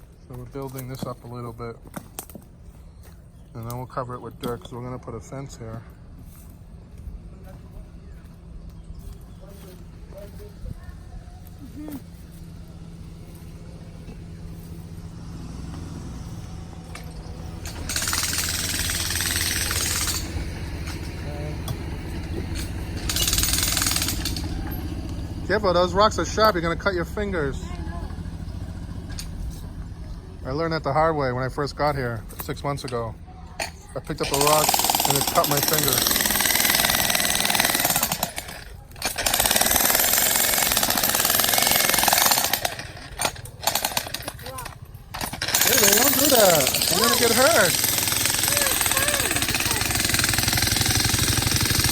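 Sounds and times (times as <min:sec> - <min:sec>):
engine humming: 0:00.0 - 0:51.9
machine hammering rapidly: 0:17.7 - 0:20.4, 0:23.0 - 0:24.7, 0:34.2 - 0:44.4, 0:45.2 - 0:51.9.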